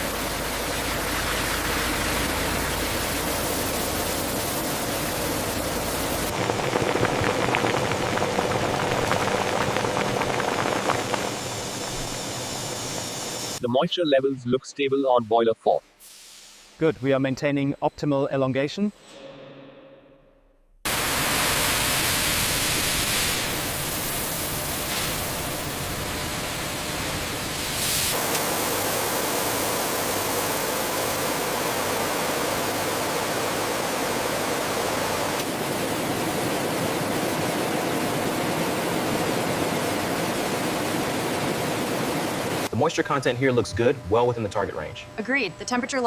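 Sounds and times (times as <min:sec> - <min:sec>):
steady rushing hiss: 0:00.0 - 0:13.6, 0:20.9 - 0:37.6.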